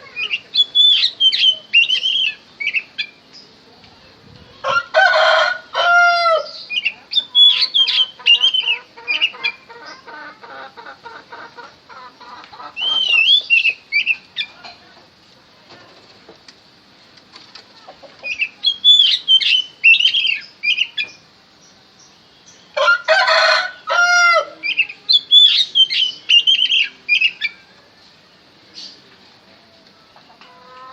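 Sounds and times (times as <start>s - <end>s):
harsh drawn-out bird call: 0.0s - 3.2s, 12.0s - 14.6s, 18.2s - 21.3s, 22.2s - 27.7s
bird singing whistled notes: 0.2s - 3.5s, 12.8s - 14.5s, 18.3s - 22.7s, 24.6s - 27.6s.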